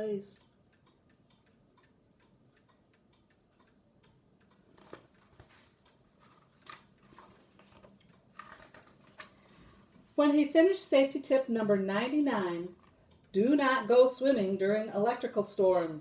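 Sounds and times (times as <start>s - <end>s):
faint regular ticking: 0.0s - 5.2s, 10.8s - 16.0s
soft clicks and rustles: 4.4s - 10.2s.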